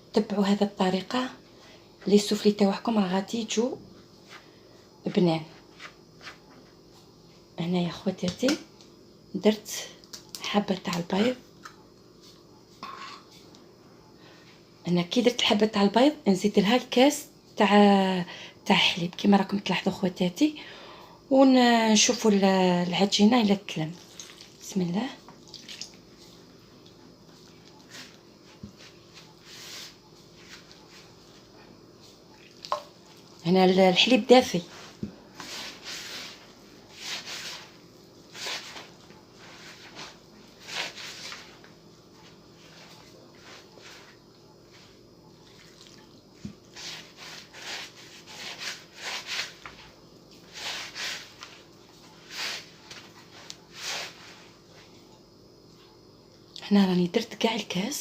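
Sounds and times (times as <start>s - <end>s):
dough mixed by hand in bowl: 22.0s - 55.1s
milk being poured: 24.0s - 24.6s.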